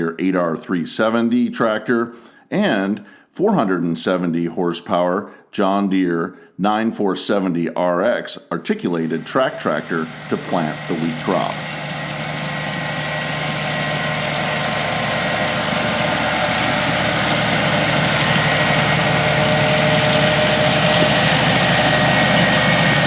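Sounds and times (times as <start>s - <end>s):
tractor diesel engine running: 9.0s - 23.0s.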